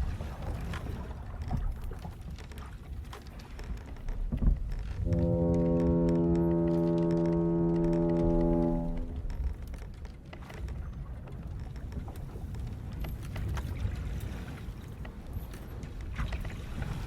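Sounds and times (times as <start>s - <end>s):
low rumble of sea: 0.0s - 17.0s
wooden ship creaking and knocking: 0.0s - 17.0s
ship's horn blast: 5.0s - 9.5s.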